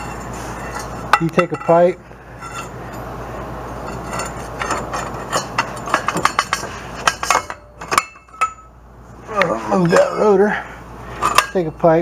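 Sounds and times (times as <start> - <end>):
metal tools clinking: 0.0 - 3.1, 3.7 - 8.8, 11.1 - 12.0
steady low hum: 0.0 - 12.0.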